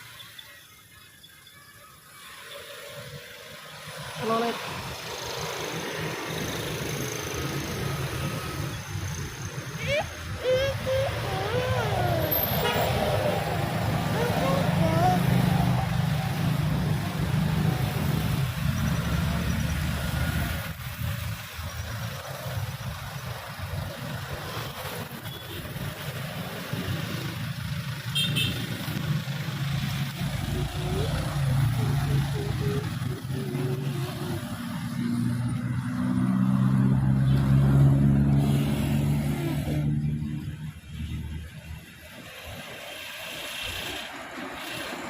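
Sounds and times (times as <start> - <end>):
passing bus noise: 0.0 - 45.0
bus multi-tone horn: 12.3 - 13.1
vehicle engine rumbling past: 28.8 - 41.6.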